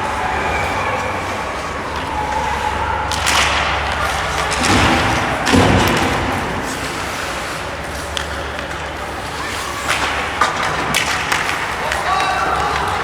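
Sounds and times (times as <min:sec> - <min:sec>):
heavy thuds on rink boards: 0:03.1 - 0:08.9.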